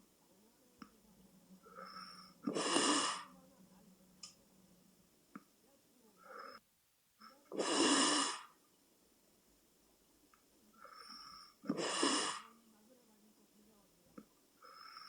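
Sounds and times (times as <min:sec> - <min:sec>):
soft breathing: 0:00.9 - 0:03.5, 0:10.7 - 0:12.7, 0:14.6 - 0:15.0.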